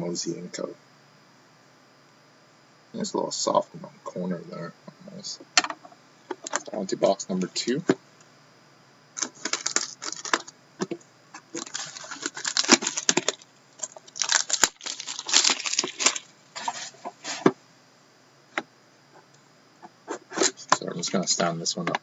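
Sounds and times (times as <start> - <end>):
plastic wrap tearing and crinkling: 9.2 - 10.5, 11.5 - 17.4.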